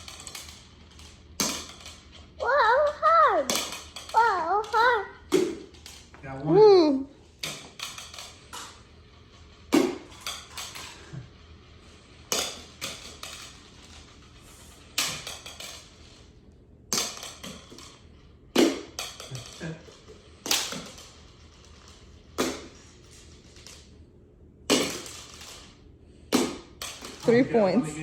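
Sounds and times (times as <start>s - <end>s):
rings clacking on cones: 16.9s - 23.3s.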